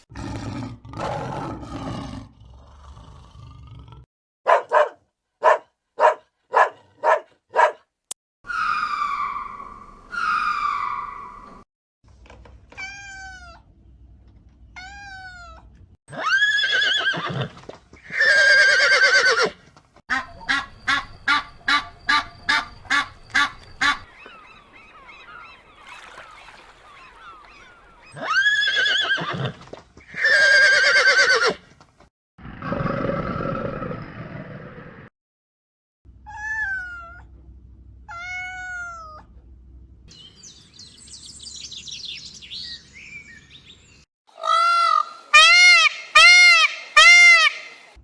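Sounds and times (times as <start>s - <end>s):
farm fowl calling: 8.5s - 11.6s, 20.1s - 28.1s, 40.1s - 44.0s.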